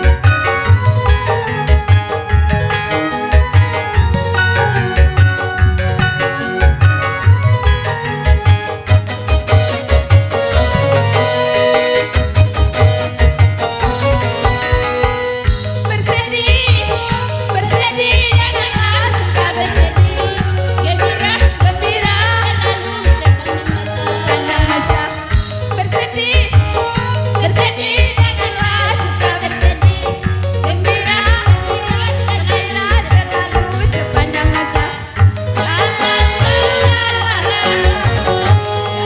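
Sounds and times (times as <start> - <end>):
heavy bass line: 0.0 - 30.8
drum beat: 0.0 - 39.0
ornamented melody line: 0.0 - 39.0.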